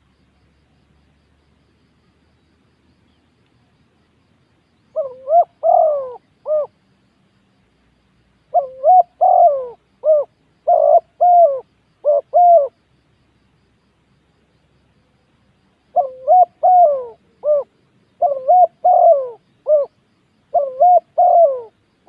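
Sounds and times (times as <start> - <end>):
dove cooing: 4.9 - 6.7, 8.5 - 12.8, 15.9 - 21.8.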